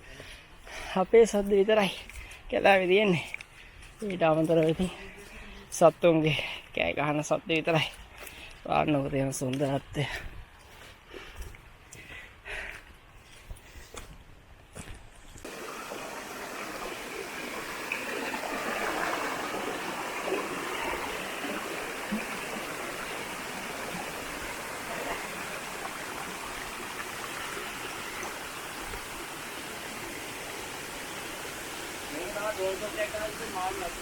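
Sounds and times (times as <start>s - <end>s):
stream flowing: 15.4s - 34.0s.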